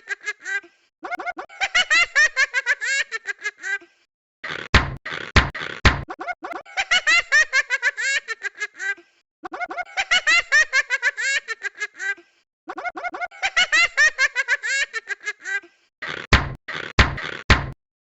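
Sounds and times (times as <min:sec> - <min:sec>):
high-pitched cartoon voice giggling: 0:00.0 - 0:01.8, 0:06.1 - 0:06.8, 0:08.7 - 0:10.3, 0:11.7 - 0:13.8.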